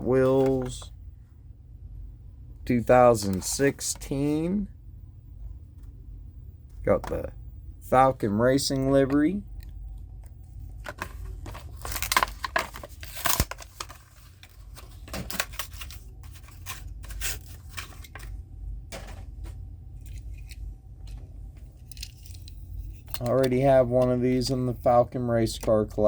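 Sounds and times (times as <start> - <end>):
plastic crinkling: 10.8 - 18.3
cardboard tearing: 11.6 - 18.2.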